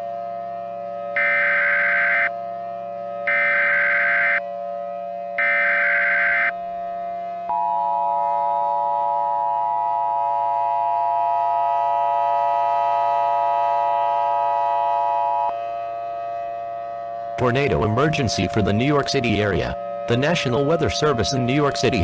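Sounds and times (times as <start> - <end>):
data burst: 1.2 - 2.3, 3.3 - 4.4, 5.4 - 6.5
two-tone attention signal: 1.2 - 2.3, 3.3 - 4.4.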